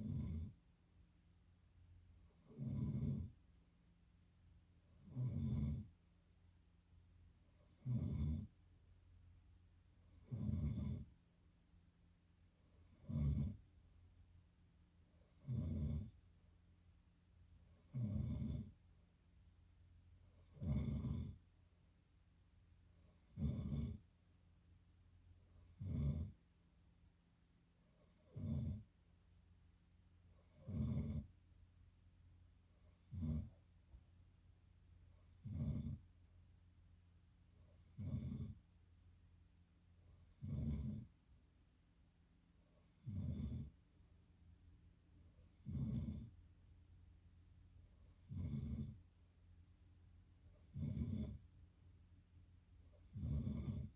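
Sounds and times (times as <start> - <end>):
low snores: 0.0 - 0.7, 2.2 - 3.5, 4.8 - 6.0, 7.5 - 8.7, 10.0 - 11.2, 12.6 - 13.8, 15.1 - 16.3, 17.6 - 18.9, 20.2 - 21.5, 23.0 - 24.1, 25.5 - 26.5, 27.9 - 29.0, 30.3 - 31.4, 32.8 - 34.1, 35.1 - 36.2, 37.6 - 38.7, 40.1 - 41.2, 42.7 - 43.9, 45.4 - 46.5, 48.0 - 49.1, 50.5 - 51.6, 52.9 - 53.9
quiet breathing: 0.0 - 0.8, 22.4 - 53.9.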